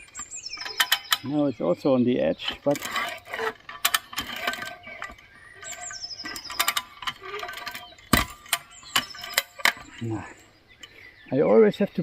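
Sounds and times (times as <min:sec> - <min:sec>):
metallic ratchet clicks and clacks: 0:02.6 - 0:11.0.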